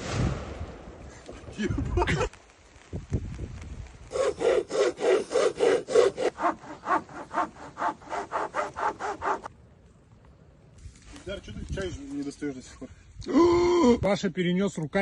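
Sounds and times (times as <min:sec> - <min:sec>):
hand saw cutting wood: 0:04.1 - 0:09.5.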